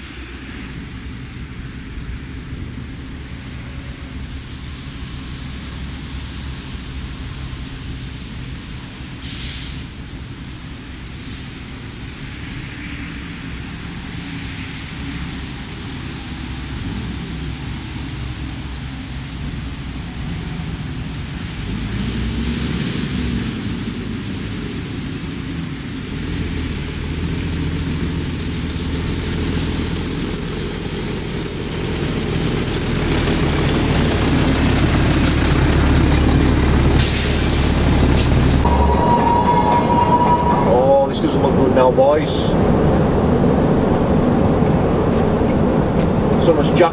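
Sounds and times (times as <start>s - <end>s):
truck diesel engine running: 0.0s - 46.9s
high hiss: 9.0s - 12.4s, 15.4s - 33.0s.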